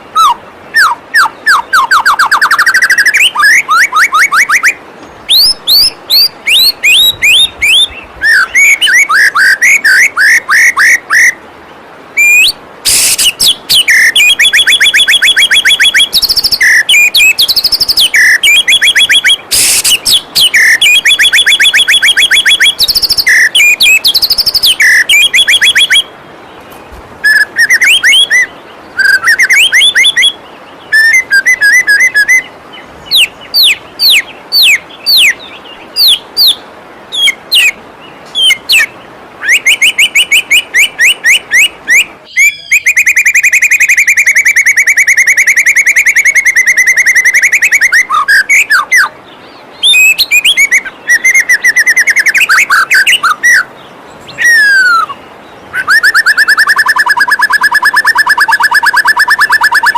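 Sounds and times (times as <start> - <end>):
bird singing whistled notes: 0.0 - 11.4, 12.2 - 26.1, 26.7 - 59.9
waterfall rushing: 0.0 - 42.7.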